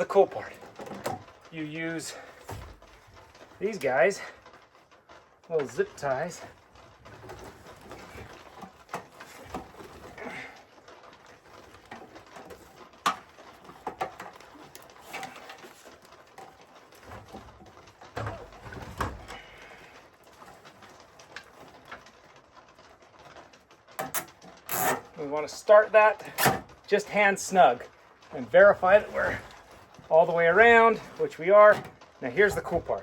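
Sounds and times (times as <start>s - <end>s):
rustling: 0.0s - 33.0s.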